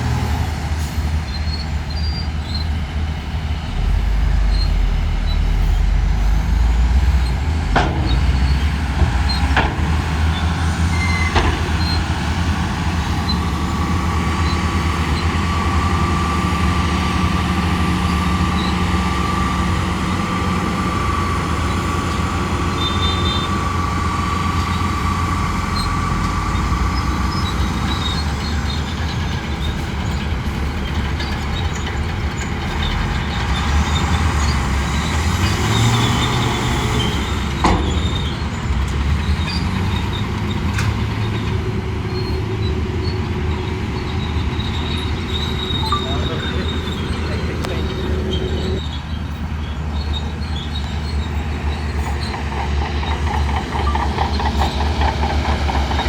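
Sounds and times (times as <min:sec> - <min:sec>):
bulldozer diesel engine running: 0:00.0 - 0:56.0
high steady squeal: 0:00.8 - 0:12.1, 0:42.1 - 0:49.1.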